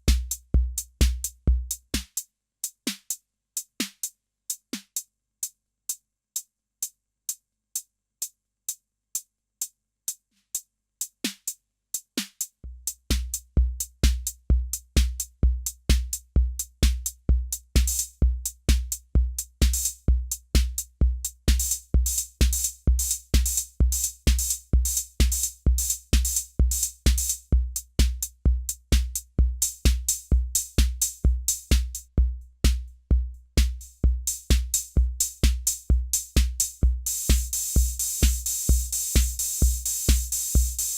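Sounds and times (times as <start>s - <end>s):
kick drum: 0.0s - 2.2s, 12.6s - 40.9s
hi-hat and cymbal hits: 0.0s - 5.1s, 10.1s - 32.9s, 33.6s - 40.9s
drum machine ticks: 0.0s - 40.9s.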